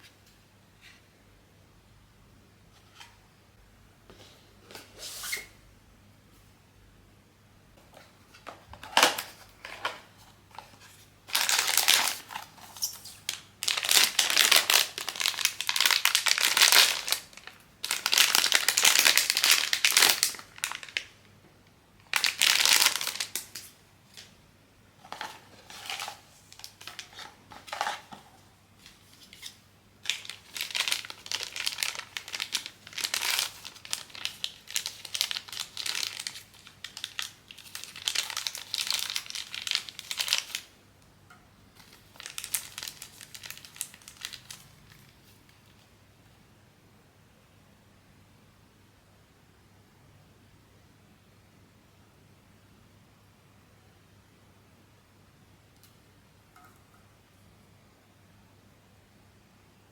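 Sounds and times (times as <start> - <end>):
plastic packaging crinkling: 8.8 - 21.2, 22.0 - 24.3, 25.0 - 28.2, 28.8 - 40.8, 41.8 - 45.8.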